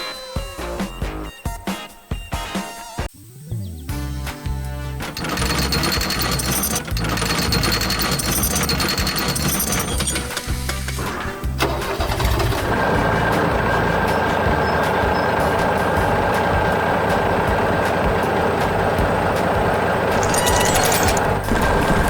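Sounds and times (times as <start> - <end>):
heavy truck engine running: 5.1 - 22.0.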